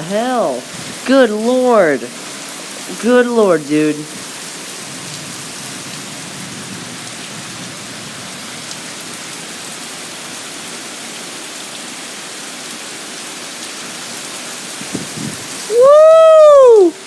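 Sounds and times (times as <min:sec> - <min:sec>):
heavy rain pouring: 0:00.0 - 0:17.0
strong wind: 0:00.6 - 0:01.2, 0:04.8 - 0:09.7, 0:14.6 - 0:17.0.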